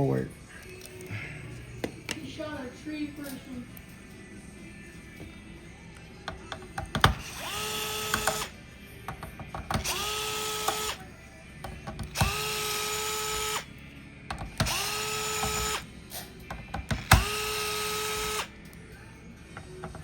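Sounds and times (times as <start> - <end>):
electric screwdriver motor whine: 7.0 - 8.6, 9.8 - 11.1, 12.0 - 13.7, 14.6 - 15.9, 16.9 - 18.6.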